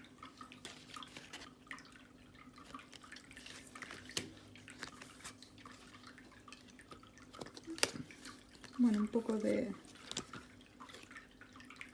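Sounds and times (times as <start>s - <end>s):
cards clicking and tapping: 3.8s - 5.3s, 7.3s - 9.0s.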